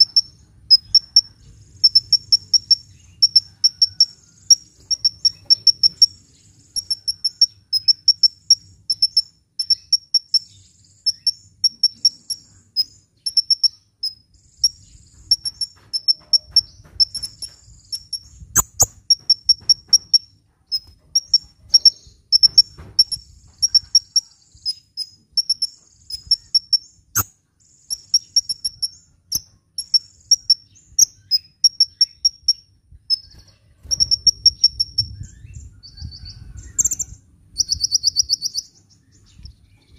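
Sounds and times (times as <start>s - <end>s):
sharp clicks: 15.2s - 23.9s
bird singing high trills: 20.8s - 39.9s.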